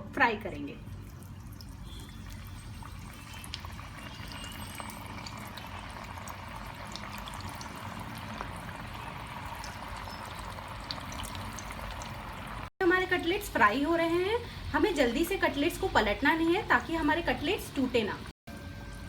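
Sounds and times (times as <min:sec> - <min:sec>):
cutlets sizzling in hot oil: 0:01.8 - 0:12.7.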